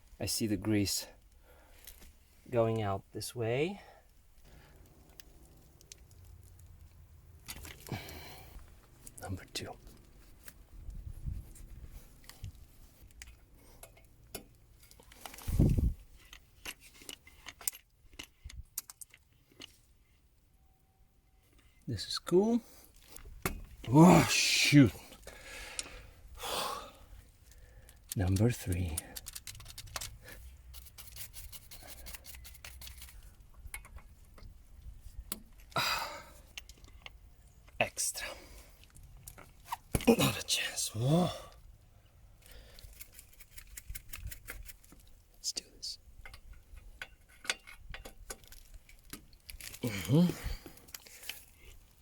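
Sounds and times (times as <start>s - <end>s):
small clicks and rubbing: 4.1s - 7.9s, 8.6s - 20.2s, 27.4s - 34.6s, 42.4s - 45.3s, 46.2s - 49.8s.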